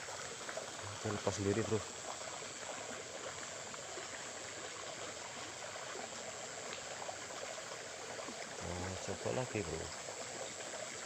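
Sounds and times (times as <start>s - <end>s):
stream of water running: 0.0s - 11.0s.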